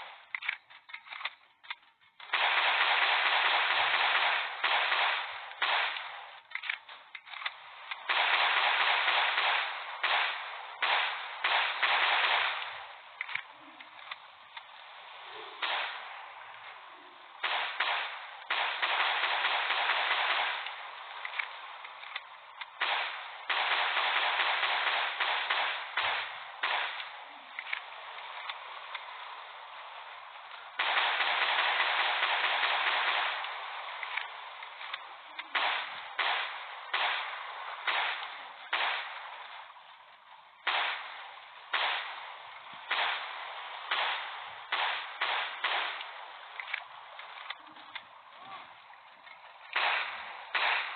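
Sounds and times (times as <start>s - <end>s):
pistol shots echoing: 2.3s - 6.4s, 8.0s - 13.0s, 15.6s - 16.2s, 17.4s - 22.1s, 22.7s - 27.4s, 30.8s - 34.0s, 35.4s - 39.4s, 40.6s - 46.3s, 49.7s - 50.9s.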